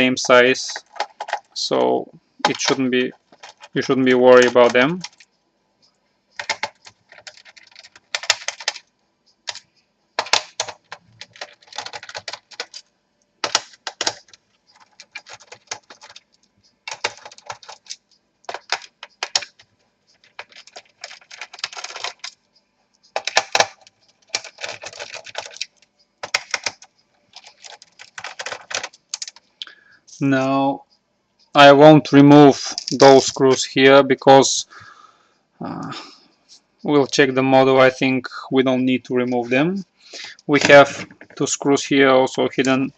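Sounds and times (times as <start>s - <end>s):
small clicks and rattles: 0.0s - 1.6s, 2.4s - 5.4s, 6.3s - 8.9s, 9.5s - 29.6s.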